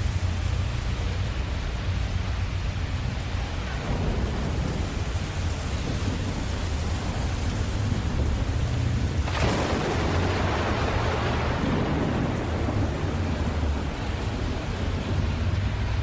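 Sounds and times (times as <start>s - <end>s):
steady rain: 0.0s - 16.0s
rumble of thunder: 3.0s - 16.0s
thunderclap: 3.4s - 16.0s.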